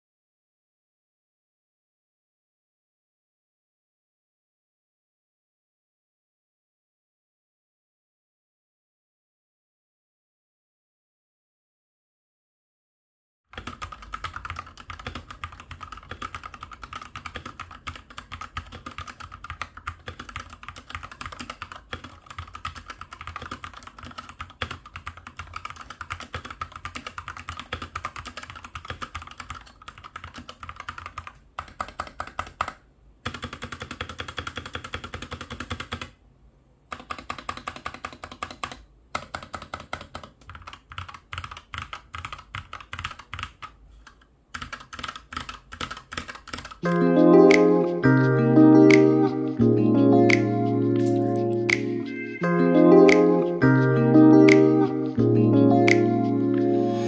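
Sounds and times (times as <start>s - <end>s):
rapid keyboard typing: 13.5s - 36.2s, 36.9s - 47.7s.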